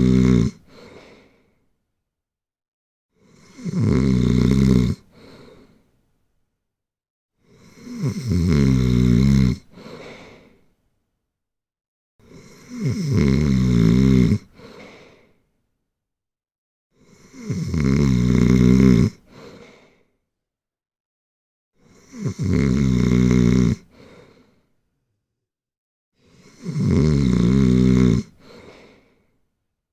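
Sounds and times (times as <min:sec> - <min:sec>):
loud rattling snoring: 0:00.0 - 0:00.6, 0:03.3 - 0:05.0, 0:07.7 - 0:09.7, 0:12.3 - 0:14.5, 0:17.2 - 0:19.2, 0:22.0 - 0:23.9, 0:26.4 - 0:28.4.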